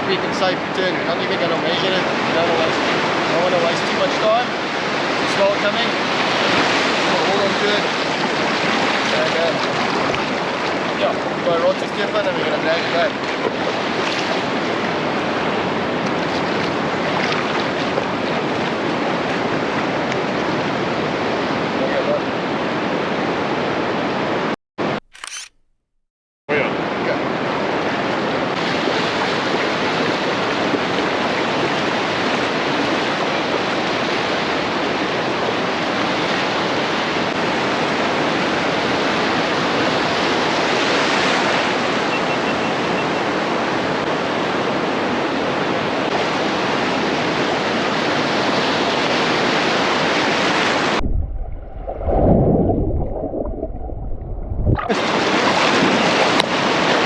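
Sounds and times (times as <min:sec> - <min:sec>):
surf breaking on beach: 0:02.0 - 0:18.8, 0:54.7 - 0:57.0
wind on microphone: 0:44.8 - 0:57.0.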